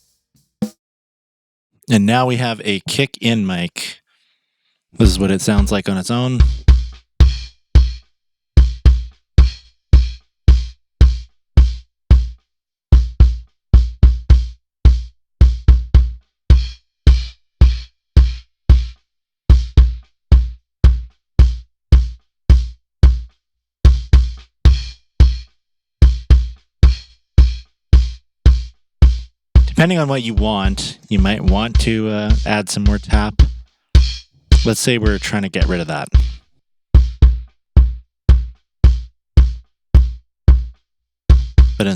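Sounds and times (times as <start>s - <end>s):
kick drum thumps: 37.0s - 40.7s, 41.3s - 41.8s.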